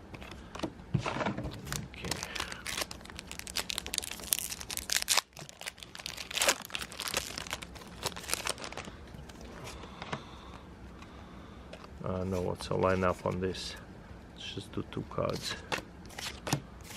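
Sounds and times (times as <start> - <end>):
foil wrapper crinkling and tearing: 1.6 - 9.0.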